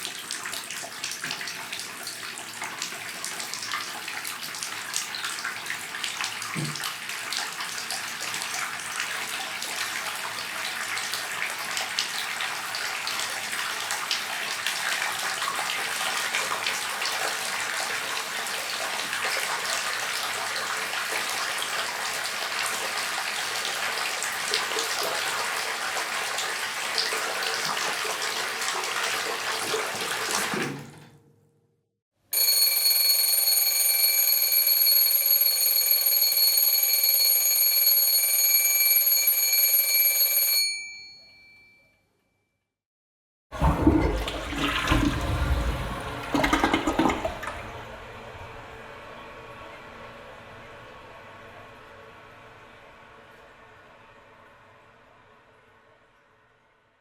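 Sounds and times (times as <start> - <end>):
water running: 43.6 - 47.9.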